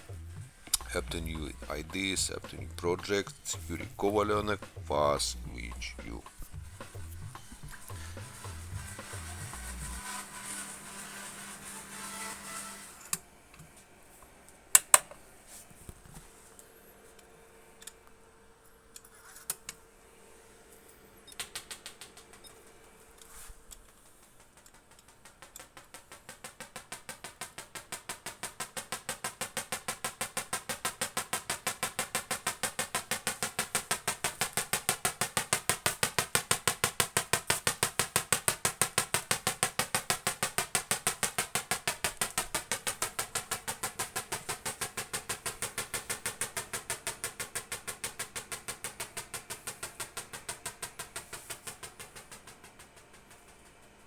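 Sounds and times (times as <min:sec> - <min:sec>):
tesla coil spark cracks: 0:00.0 - 0:13.2.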